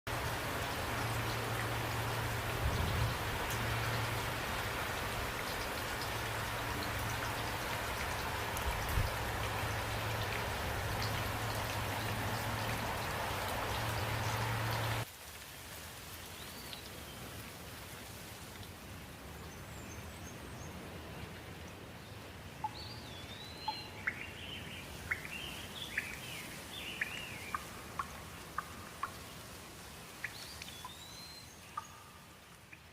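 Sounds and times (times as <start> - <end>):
steady rain: 0.1 - 32.9
birds chirping: 22.6 - 29.4.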